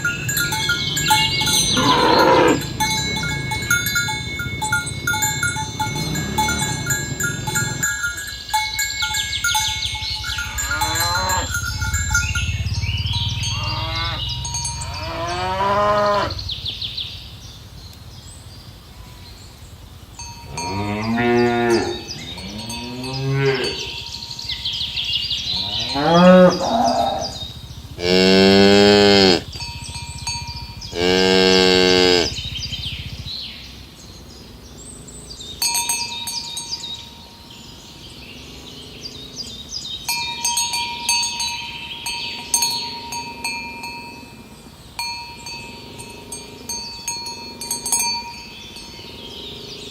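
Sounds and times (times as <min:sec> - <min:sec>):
cows mooing: 0:00.0 - 0:08.3, 0:09.3 - 0:16.5, 0:20.4 - 0:24.6, 0:25.4 - 0:32.6
bell clinking: 0:00.0 - 0:15.5, 0:20.2 - 0:25.0, 0:29.5 - 0:31.0, 0:35.6 - 0:37.6, 0:40.1 - 0:49.7.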